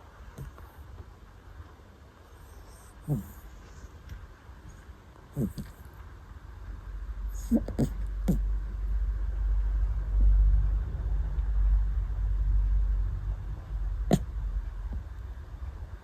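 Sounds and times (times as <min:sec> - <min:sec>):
puppy snoring: 0:00.2 - 0:00.9, 0:02.3 - 0:04.0, 0:05.3 - 0:06.0, 0:07.2 - 0:08.8, 0:13.4 - 0:15.0.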